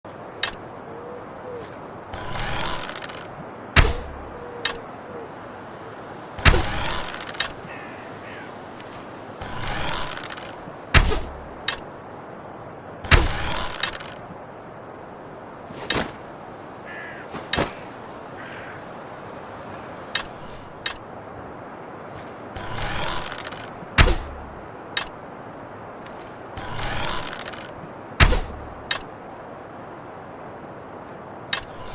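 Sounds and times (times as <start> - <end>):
bow being drawn scraping: 2.2 - 3.3, 9.4 - 11.4, 22.6 - 24.4, 26.2 - 28.6
knocks and clicks of bow: 2.2 - 4.8, 6.4 - 7.6, 13.1 - 14.2, 26.6 - 29.1, 31.5 - 31.9.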